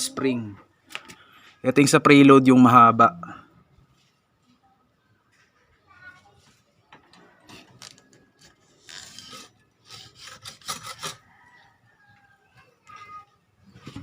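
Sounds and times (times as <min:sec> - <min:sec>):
fork parts scraping and rubbing: 0:07.2 - 0:11.3.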